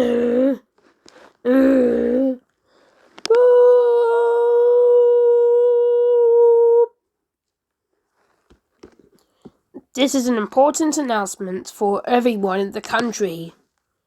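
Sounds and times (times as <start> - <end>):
person humming steady note: 3.3 - 6.9.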